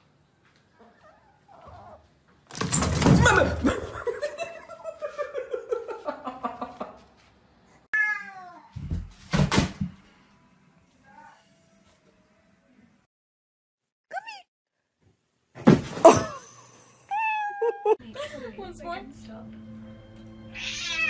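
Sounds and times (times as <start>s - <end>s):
cat yowling: 20.6s - 21.0s.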